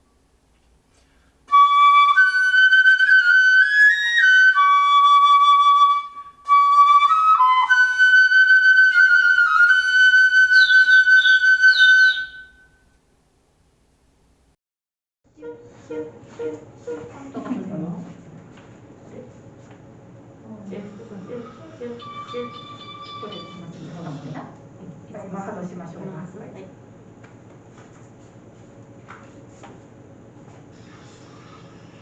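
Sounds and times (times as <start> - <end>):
flute playing: 1.5 - 12.8, 15.3 - 17.4, 21.4 - 23.8.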